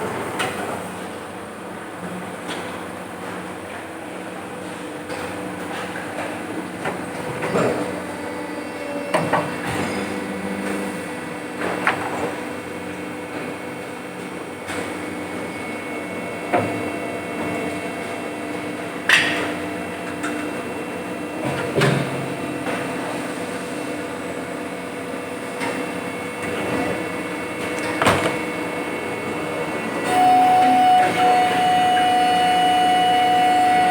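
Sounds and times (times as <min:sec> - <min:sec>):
machines humming: 0:00.0 - 0:33.9
steady whining tone: 0:30.0 - 0:33.9.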